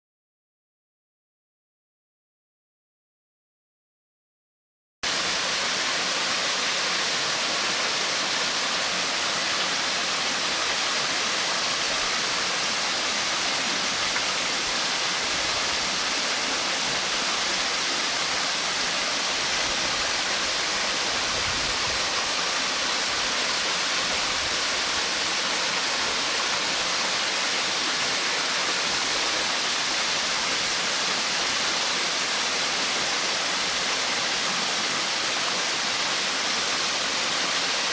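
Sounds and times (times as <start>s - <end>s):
waterfall rushing: 5.1s - 37.9s.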